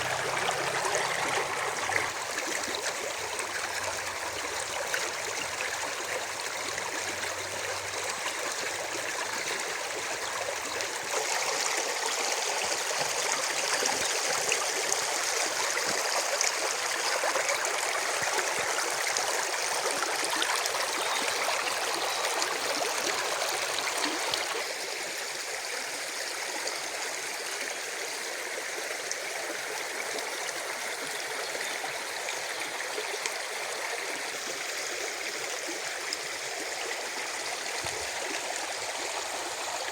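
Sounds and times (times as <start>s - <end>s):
spring water running: 0.0s - 24.7s.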